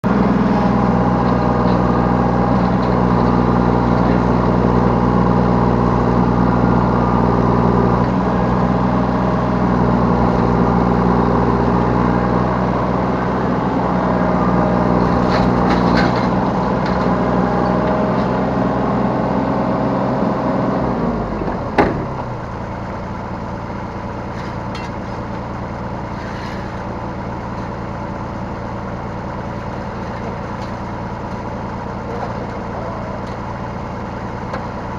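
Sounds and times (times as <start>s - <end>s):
excavator diesel engine running: 0.0s - 34.9s
sharp clunk: 21.4s - 22.4s.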